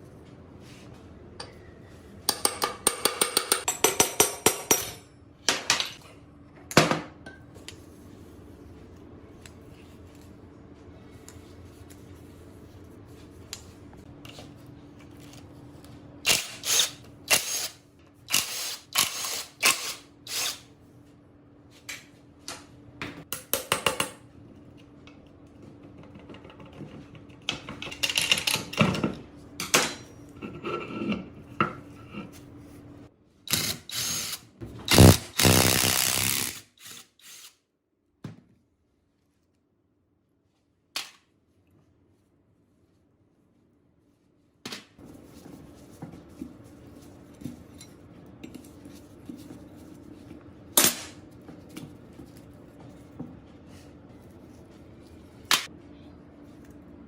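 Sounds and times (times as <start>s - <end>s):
power tool running: 33.5s - 37.5s.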